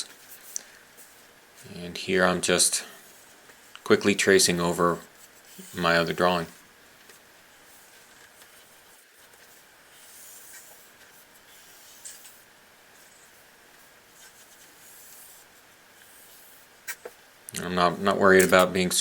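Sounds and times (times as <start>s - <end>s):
chalk pastel scratching paper: 7.6s - 17.2s.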